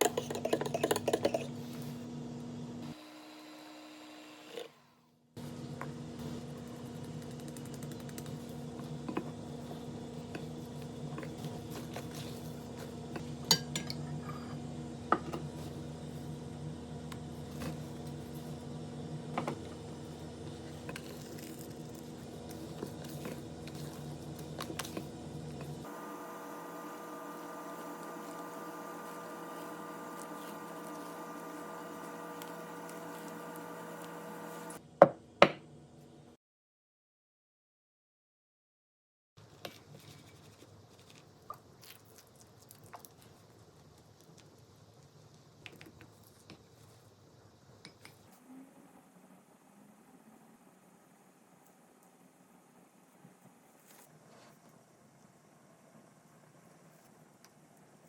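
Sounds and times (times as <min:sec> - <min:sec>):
utensils and bowls clinking: 0:00.0 - 0:01.6.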